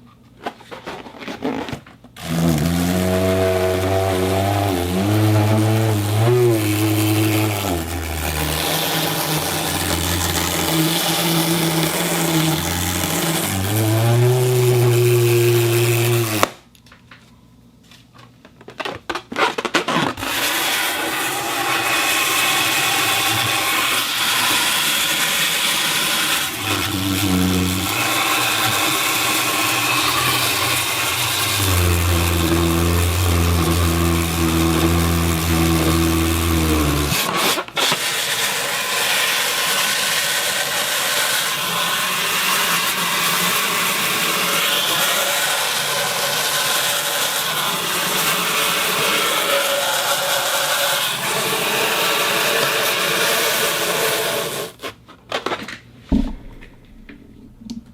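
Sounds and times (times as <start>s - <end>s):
buzzing drone bending in pitch: 2.2s - 16.5s, 26.0s - 37.3s.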